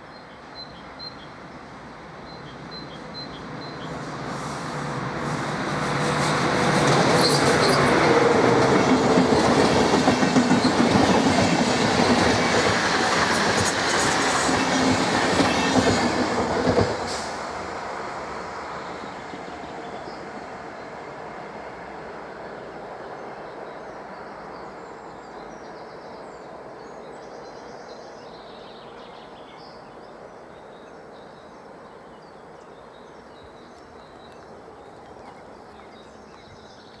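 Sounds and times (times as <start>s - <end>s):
train wheels rumbling on rails: 1.6s - 25.5s.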